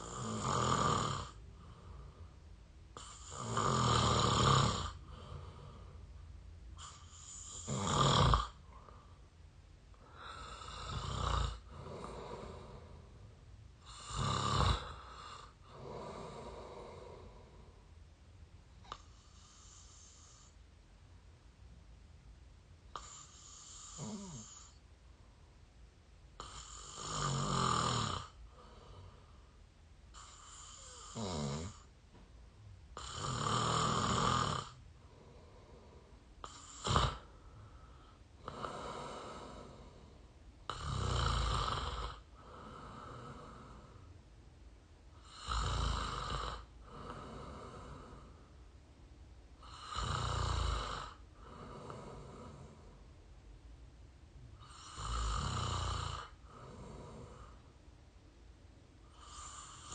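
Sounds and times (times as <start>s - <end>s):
person snoring: 0.0s - 2.2s, 3.0s - 6.0s, 6.8s - 9.0s, 10.0s - 13.2s, 13.8s - 17.8s, 23.0s - 24.8s, 26.4s - 29.3s, 30.1s - 31.9s, 33.0s - 44.1s, 45.2s - 48.5s, 49.6s - 53.0s, 54.6s - 57.7s, 59.1s - 59.9s.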